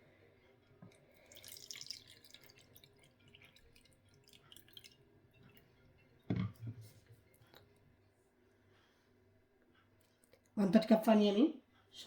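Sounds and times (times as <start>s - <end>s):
water dripping and splashing: 1.2s - 5.6s.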